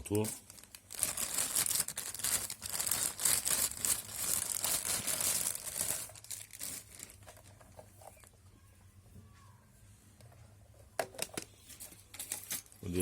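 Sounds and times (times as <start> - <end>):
plastic packaging crinkling: 0.0 - 8.4.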